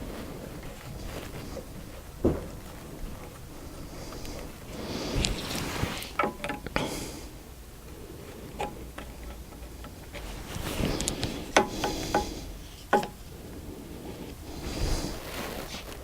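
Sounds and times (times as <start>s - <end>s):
light metal clicks and taps: 6.1s - 6.8s, 8.5s - 10.3s, 11.0s - 13.2s.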